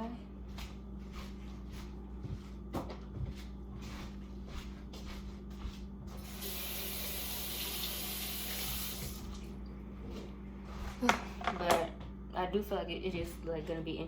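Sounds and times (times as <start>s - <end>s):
kitchen tap running: 6.2s - 9.6s
kitchen handling clicks and knocks: 11.1s - 12.0s.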